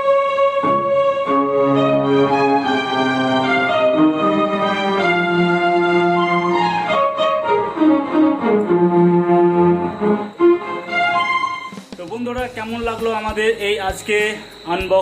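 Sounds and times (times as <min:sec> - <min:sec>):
keyboard bowed-string melody: 0:00.0 - 0:11.8.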